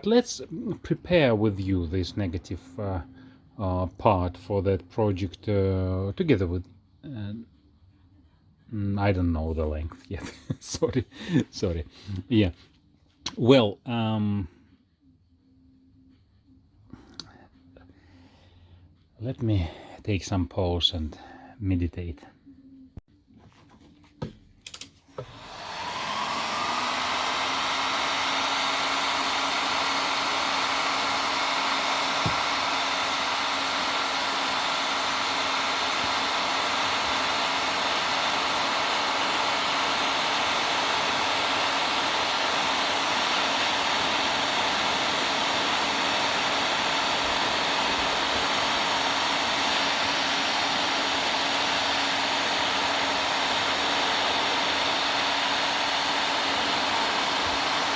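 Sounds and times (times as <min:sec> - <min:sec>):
heat gun fan whirring: 0:24.2 - 0:57.9.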